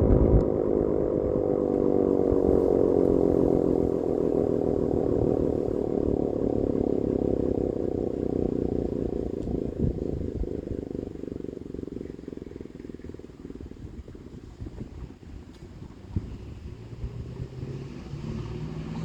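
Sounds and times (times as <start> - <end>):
warning siren wail: 0.0 - 10.9
rough low rumble: 0.0 - 19.0.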